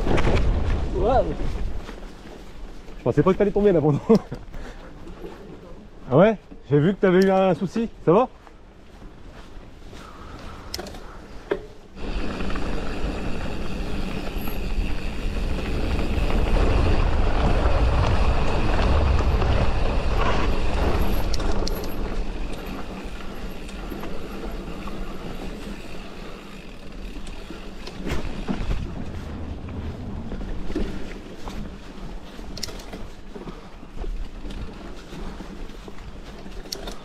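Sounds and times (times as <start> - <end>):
bike tyres rolling on dirt: 0.0 - 37.0
wind buffeting microphone: 12.0 - 32.3.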